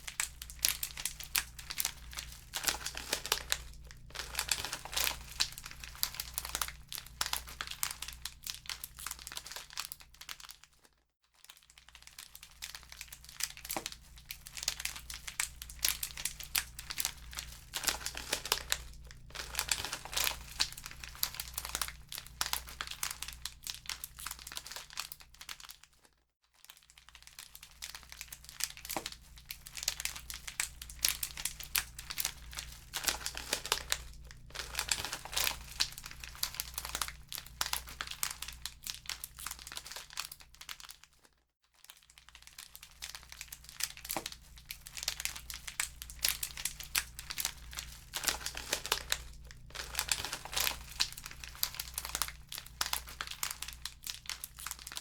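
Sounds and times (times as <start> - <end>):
steady low hum: 0.0 - 8.1, 15.0 - 23.2, 30.3 - 38.5
wood fire crackling and popping: 0.1 - 8.7, 14.6 - 23.5, 30.2 - 39.1, 43.6 - 55.0.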